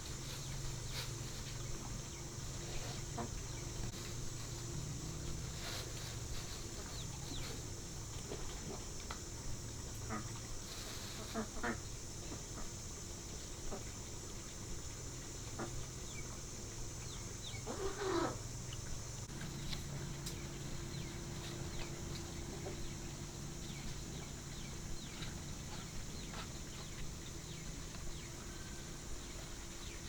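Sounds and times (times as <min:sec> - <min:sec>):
small birds chirping: 0:00.0 - 0:08.8, 0:15.5 - 0:30.0
steady high hiss: 0:00.0 - 0:30.0
chicken calling: 0:17.6 - 0:18.4.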